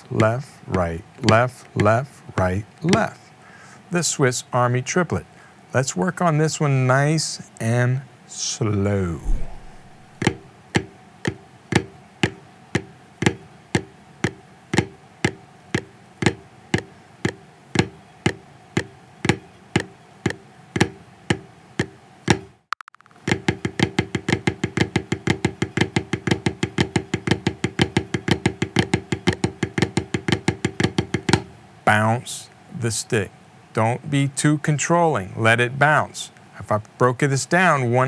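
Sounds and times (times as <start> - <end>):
snare drum rudiment: 9.2 - 10.4.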